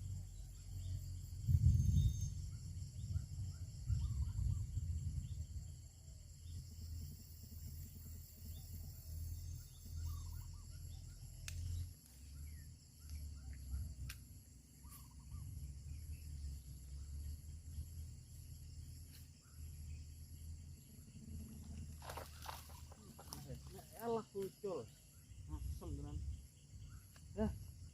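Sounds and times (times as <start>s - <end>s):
low rumble: 0.0s - 6.8s
small birds chirping: 0.0s - 7.1s, 8.2s - 27.9s
high insect drone: 0.0s - 27.9s.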